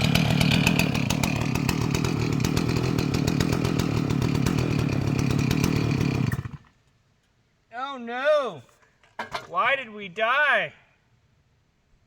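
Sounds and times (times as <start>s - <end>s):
chainsaw running at high speed: 0.0s - 6.7s.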